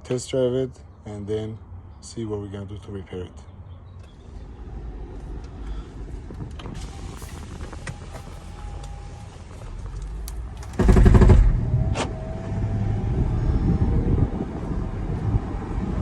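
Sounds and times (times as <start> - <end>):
engine and road noise: 0.0 - 16.0
rapid mechanical knocking: 4.2 - 11.7.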